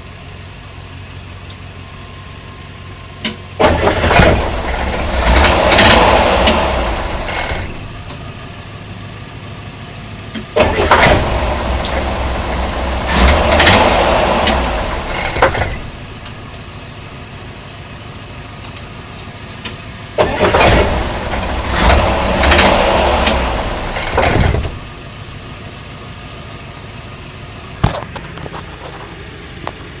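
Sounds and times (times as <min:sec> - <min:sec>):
car engine running: 0:00.0 - 0:30.0.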